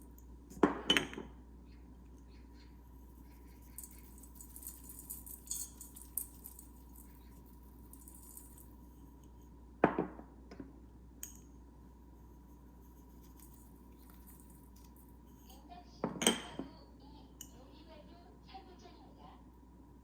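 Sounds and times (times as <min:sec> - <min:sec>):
glass dishes clinking: 0:16.0 - 0:16.7.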